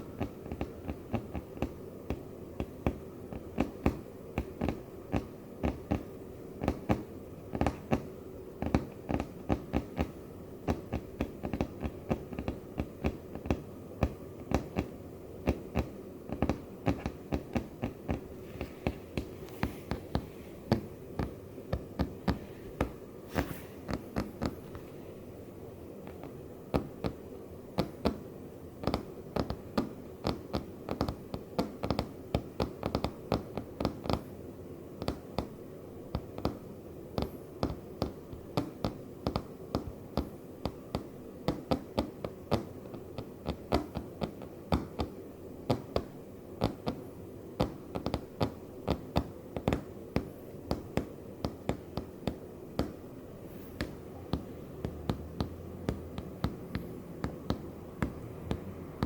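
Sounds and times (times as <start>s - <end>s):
faint steady hum: 0.0s - 59.0s
sharp taps on floor: 0.2s - 24.8s, 47.6s - 53.0s, 53.8s - 58.7s.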